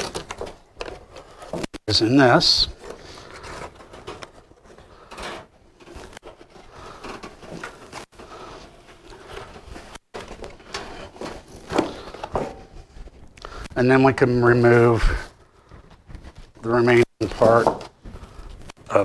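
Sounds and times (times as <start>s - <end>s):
packaging rustling and scraping: 0.0s - 13.7s.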